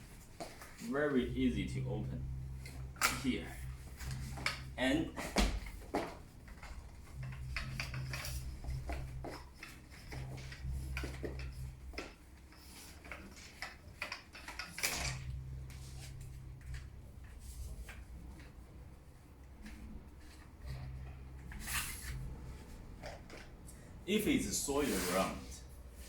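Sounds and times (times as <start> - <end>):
umbrella frame clicks and rattles: 2.2 - 18.6.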